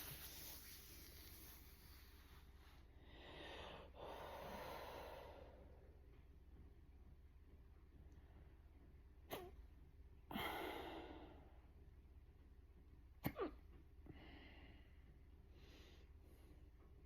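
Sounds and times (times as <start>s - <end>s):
breathing: 3.0s - 5.9s, 10.3s - 11.5s, 14.0s - 16.7s.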